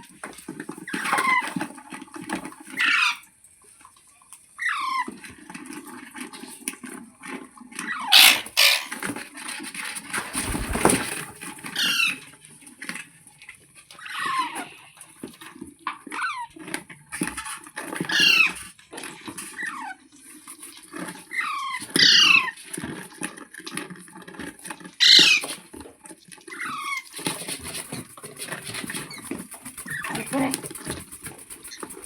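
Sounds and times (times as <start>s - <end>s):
parrot shrill calls: 8.0s - 9.0s, 25.0s - 25.4s
parrot soft chattering: 8.1s - 9.0s.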